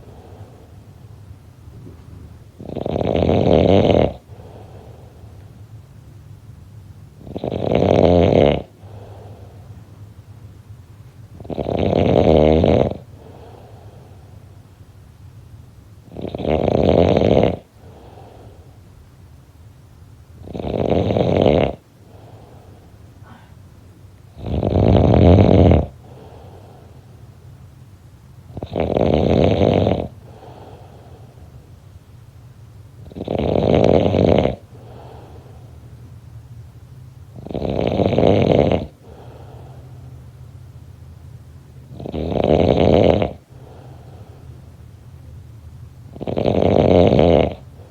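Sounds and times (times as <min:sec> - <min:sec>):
faint breathing: 0:00.0 - 0:03.1, 0:04.0 - 0:05.8, 0:08.7 - 0:10.1, 0:13.0 - 0:14.8, 0:17.6 - 0:19.0, 0:21.8 - 0:25.2, 0:25.8 - 0:27.6, 0:30.0 - 0:31.9, 0:34.5 - 0:36.2, 0:37.3 - 0:40.6, 0:41.8 - 0:45.2
person snoring: 0:02.6 - 0:04.9, 0:07.2 - 0:09.4, 0:11.4 - 0:13.6, 0:16.1 - 0:18.3, 0:24.4 - 0:26.7, 0:28.6 - 0:31.0, 0:33.1 - 0:35.4, 0:37.4 - 0:39.7, 0:41.9 - 0:44.2, 0:46.1 - 0:47.6.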